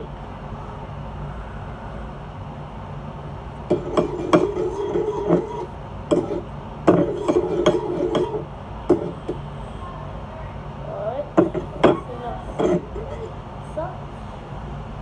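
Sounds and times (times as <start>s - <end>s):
utensil scraping and clinking bowl: 3.7s - 9.4s, 11.4s - 13.3s.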